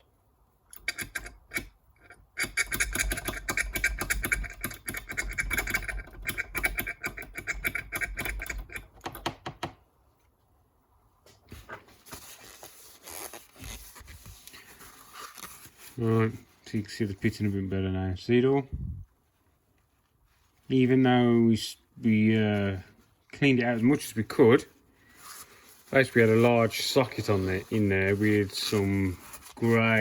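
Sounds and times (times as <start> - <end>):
faint rustling: 10.2 - 30.0
scratchy scrubbing by hand: 23.8 - 30.0.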